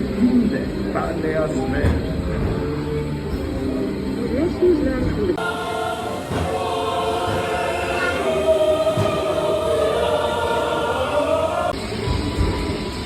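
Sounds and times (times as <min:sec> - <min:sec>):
music: 0:00.0 - 0:13.0
choir singing held chords: 0:05.3 - 0:13.0.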